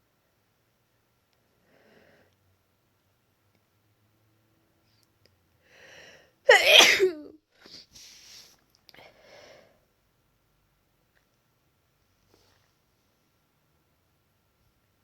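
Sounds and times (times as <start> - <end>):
woman sneezing: 6.5 - 7.3.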